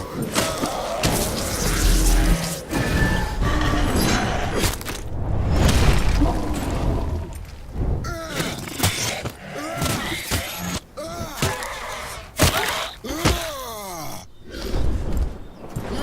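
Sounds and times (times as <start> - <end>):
voice-like cries and groans: 0.0 - 4.6, 8.0 - 14.8.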